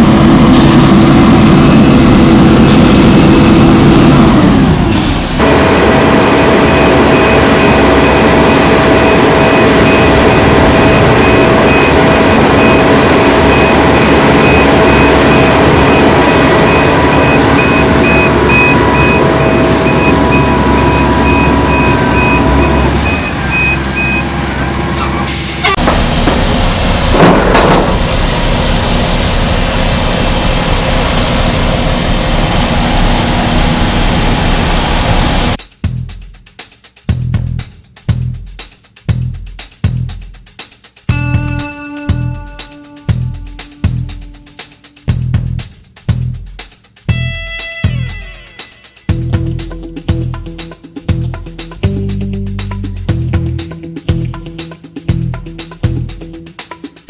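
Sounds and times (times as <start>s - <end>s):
heavy truck engine running: 0.0s - 36.2s, 41.1s - 48.3s, 49.0s - 57.0s
reversing alarm beeping: 5.4s - 25.8s.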